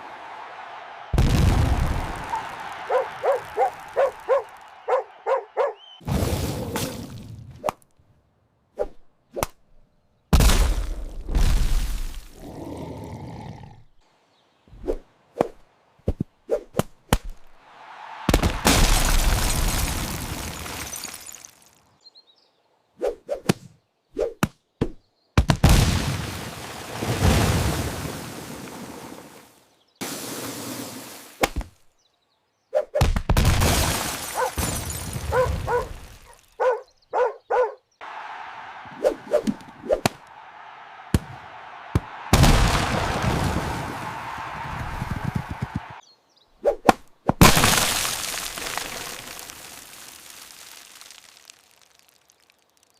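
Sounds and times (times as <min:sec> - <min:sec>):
dog barking: 0:02.9 - 0:05.8, 0:34.4 - 0:34.6, 0:35.3 - 0:37.8
shattering crash: 0:18.3 - 0:21.8, 0:33.4 - 0:35.4, 0:42.3 - 0:44.0, 0:47.4 - 0:52.4.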